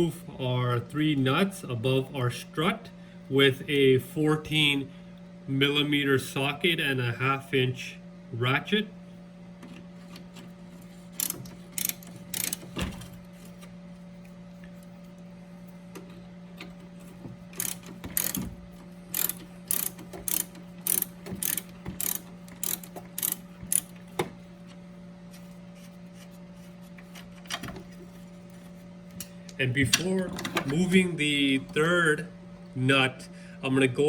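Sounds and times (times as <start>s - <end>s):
steady low hum: 0.0s - 34.0s
ratchet clicking: 11.1s - 12.8s, 17.5s - 18.5s, 19.1s - 24.3s.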